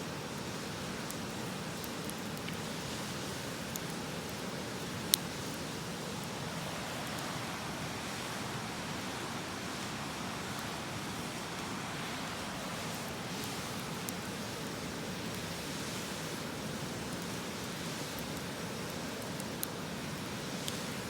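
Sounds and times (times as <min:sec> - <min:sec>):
campfire crackling: 0:00.0 - 0:21.0
wind: 0:00.0 - 0:21.0.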